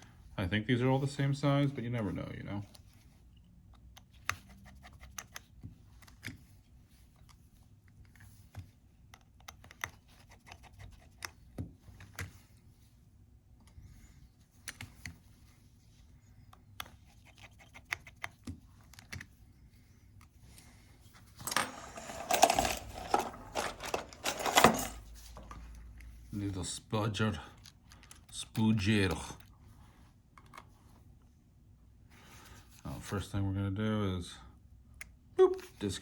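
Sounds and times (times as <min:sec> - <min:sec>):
clattering handling noise: 0:21.1 - 0:25.8.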